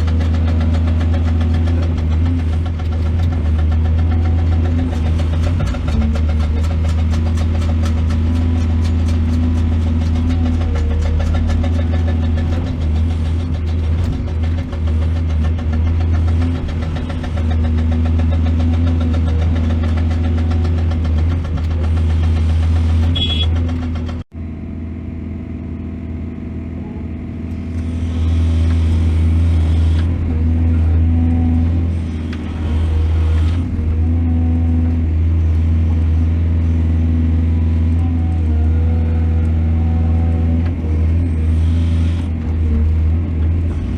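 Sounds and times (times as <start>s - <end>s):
heavy diesel engine humming: 0.0s - 43.9s.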